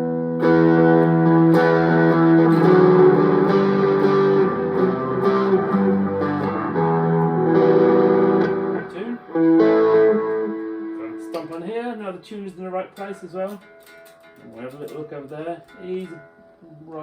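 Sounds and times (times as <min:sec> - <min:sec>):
electric guitar strummed chords: 0:00.0 - 0:11.9.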